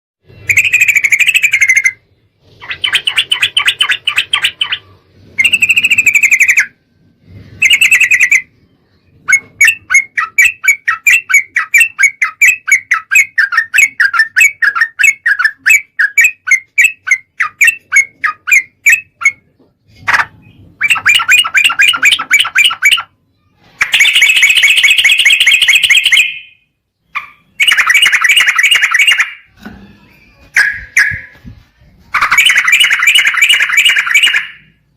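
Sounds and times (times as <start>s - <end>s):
bird song chattering: 0.2s - 6.8s, 7.5s - 34.9s
quick repeated bird notes: 0.2s - 29.6s, 30.2s - 34.9s.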